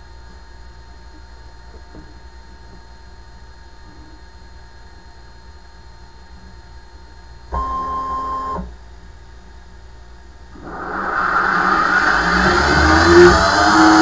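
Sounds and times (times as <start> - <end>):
spindle motor spinning up: 10.5 - 14.0
stepper motors whining: 10.6 - 14.0.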